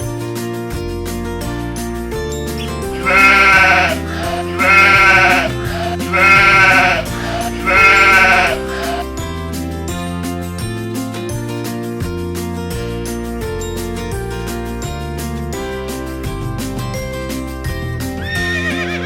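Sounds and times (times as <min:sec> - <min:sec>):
light background music: 0:00.9 - 0:19.0
sheep bleating: 0:03.0 - 0:09.0.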